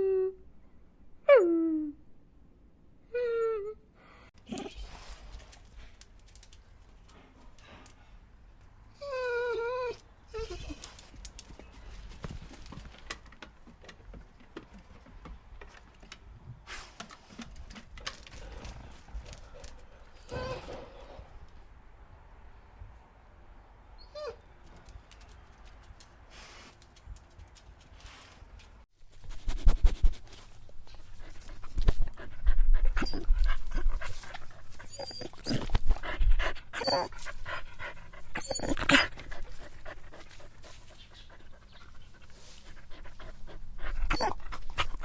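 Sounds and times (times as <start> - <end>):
dog whining: 9.0 - 11.0, 20.2 - 21.1, 24.0 - 24.5, 34.9 - 35.7, 36.8 - 37.1, 38.4 - 39.2, 44.1 - 44.4.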